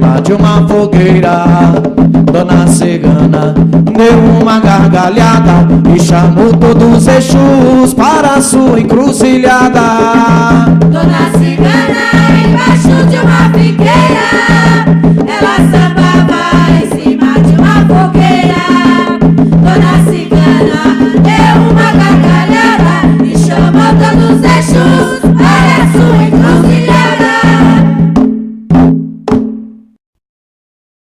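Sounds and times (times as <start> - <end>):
percussion: 0.0 - 29.8
voices singing: 8.9 - 28.1.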